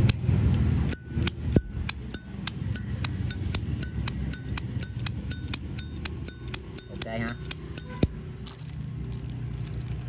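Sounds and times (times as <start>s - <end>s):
metal lighter clicking: 0.9s - 8.1s.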